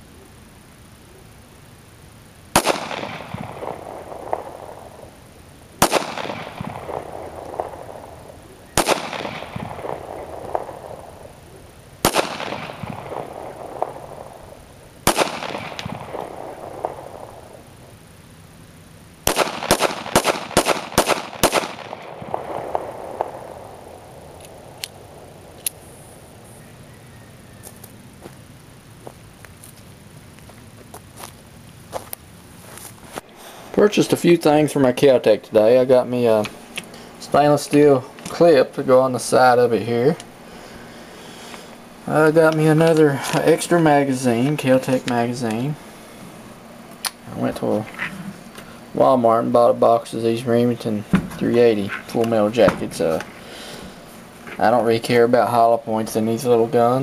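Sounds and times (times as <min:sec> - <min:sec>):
pistol shots with echo: 0:02.6 - 0:05.1, 0:05.8 - 0:11.4, 0:12.0 - 0:17.6, 0:19.3 - 0:25.5.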